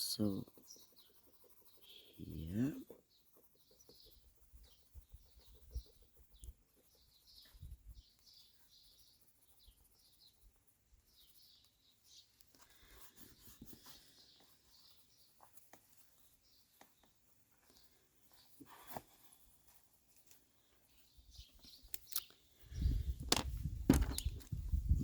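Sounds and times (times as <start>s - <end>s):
pencil scratching on paper: 0.0s - 16.4s
songbirds chirping: 0.0s - 25.0s.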